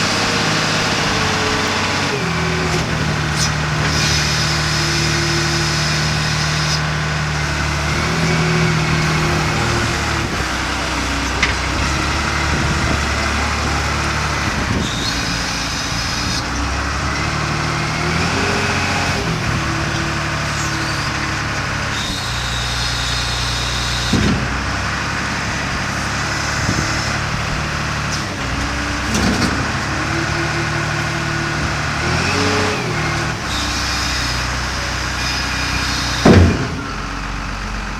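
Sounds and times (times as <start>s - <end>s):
diesel engine revving: 0.0s - 37.9s
knocks: 36.2s - 37.0s.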